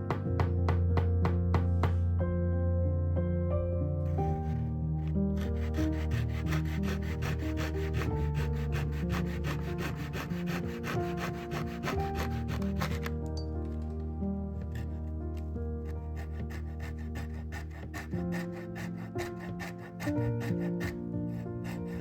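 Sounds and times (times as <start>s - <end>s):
background music: 0.0s - 22.0s
hand sanding wood: 5.4s - 13.1s, 15.8s - 22.0s.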